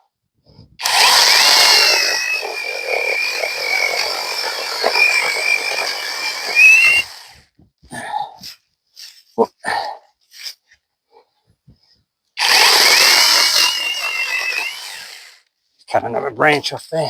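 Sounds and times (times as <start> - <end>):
electric chainsaw cutting: 0.8 - 7.4, 12.4 - 15.4.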